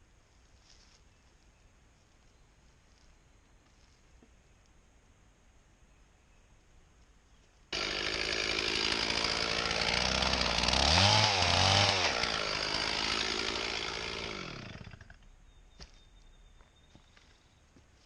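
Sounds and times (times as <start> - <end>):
chainsaw cutting wood: 7.8 - 15.2.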